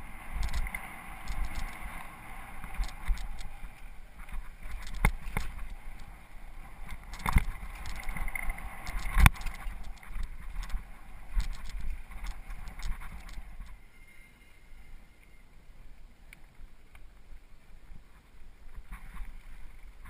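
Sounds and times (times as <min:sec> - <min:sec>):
mountain bike rattling over rocks: 0:00.4 - 0:02.0, 0:02.7 - 0:03.6, 0:04.2 - 0:06.1, 0:06.8 - 0:13.8
wheels knocking on rocks: 0:04.3 - 0:06.1, 0:06.8 - 0:13.8.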